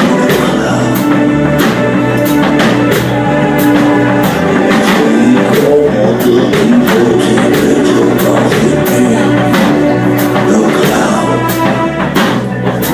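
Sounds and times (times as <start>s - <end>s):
bass line: 0.0s - 12.9s
drums steady beat: 0.0s - 12.9s
guitar: 0.0s - 12.9s.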